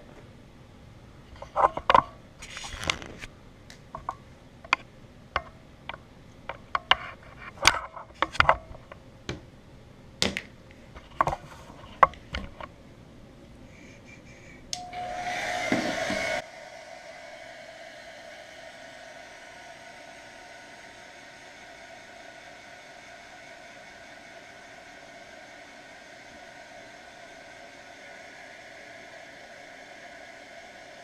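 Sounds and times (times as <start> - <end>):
hair dryer running: 14.7 - 31.0.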